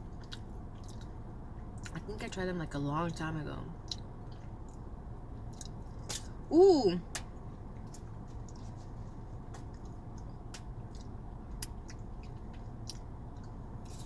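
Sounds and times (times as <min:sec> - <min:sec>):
steady low hum: 0:00.0 - 0:14.0
quiet chewing: 0:00.1 - 0:02.0, 0:03.8 - 0:06.1, 0:07.1 - 0:14.0.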